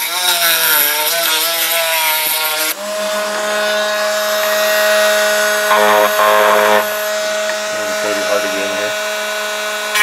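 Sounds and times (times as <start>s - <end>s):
rotary tool whining: 0.0s - 10.0s.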